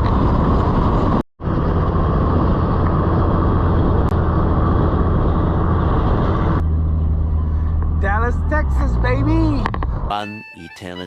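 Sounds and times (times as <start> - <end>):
vehicle engine drone: 0.0 - 10.9.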